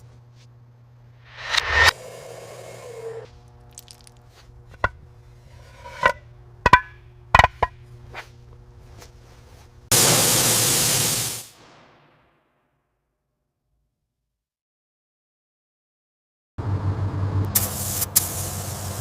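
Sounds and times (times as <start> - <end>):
low steady hum: 0.0 - 9.9
loud hiss: 9.9 - 11.8, 17.6 - 19.0.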